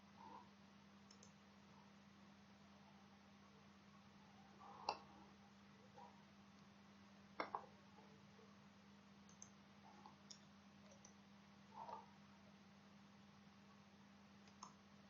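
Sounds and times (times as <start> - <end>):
faint clicks: 1.1 - 1.4, 9.3 - 11.2, 14.4 - 14.8.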